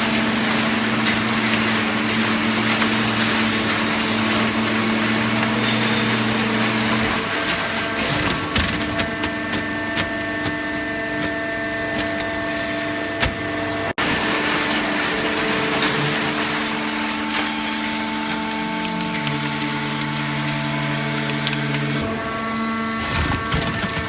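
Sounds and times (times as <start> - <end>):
hydraulic baler motor hum: 0.0 - 24.0
sharp clicks and cracks: 17.7 - 22.1.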